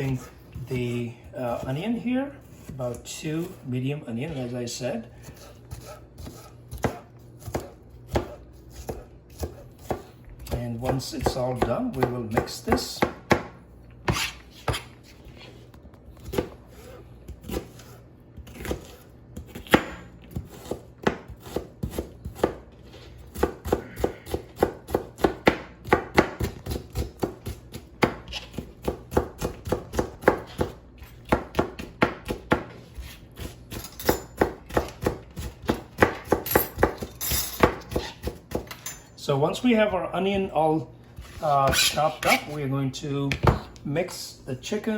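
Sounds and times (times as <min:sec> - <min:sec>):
knife chopping on cutting board: 0:05.2 - 0:14.9, 0:16.2 - 0:38.7.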